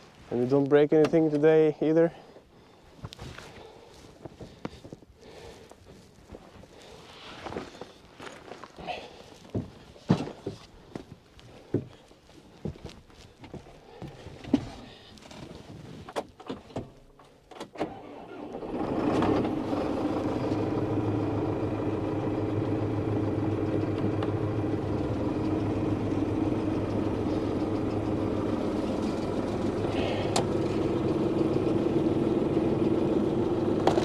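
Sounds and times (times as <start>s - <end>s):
tractor diesel engine running: 17.8s - 34.0s.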